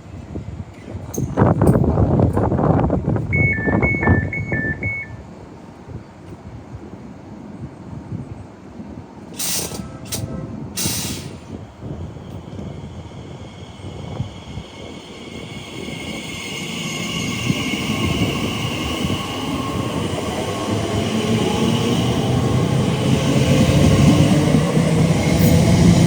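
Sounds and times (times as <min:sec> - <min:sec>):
wind rumble on microphone: 0:00.0 - 0:05.0, 0:09.8 - 0:26.0
train running noise: 0:00.0 - 0:26.0
short hisses: 0:10.8 - 0:11.6.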